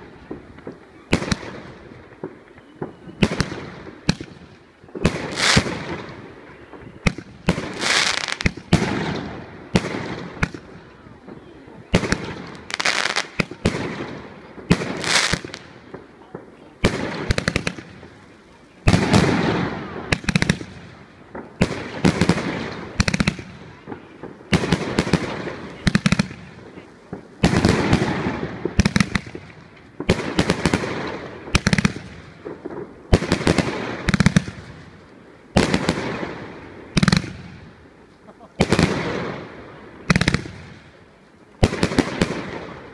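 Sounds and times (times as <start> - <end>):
firework cake firing bangs: 0.2 - 18.2, 18.8 - 34.9, 40.1 - 40.9.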